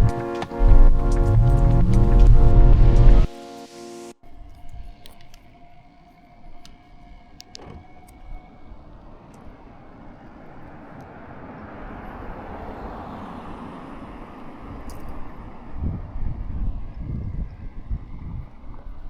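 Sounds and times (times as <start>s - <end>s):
faint clicks: 4.3s - 9.6s
vehicle passing: 9.4s - 16.6s.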